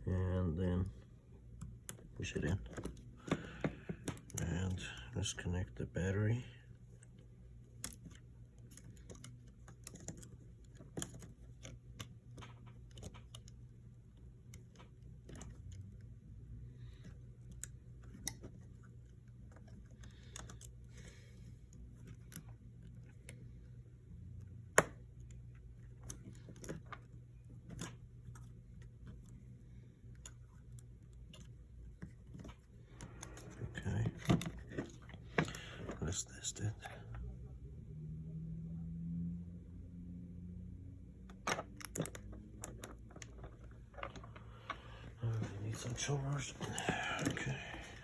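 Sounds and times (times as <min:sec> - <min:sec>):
steady low hum: 0:00.0 - 0:48.0
small clicks and taps of tools: 0:07.8 - 0:13.6, 0:17.0 - 0:23.4.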